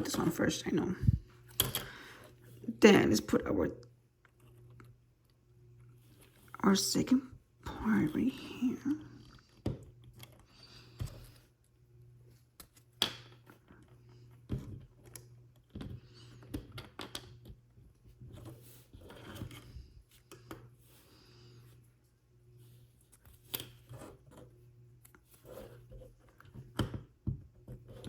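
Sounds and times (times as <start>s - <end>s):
steady low hum: 0.0s - 12.8s.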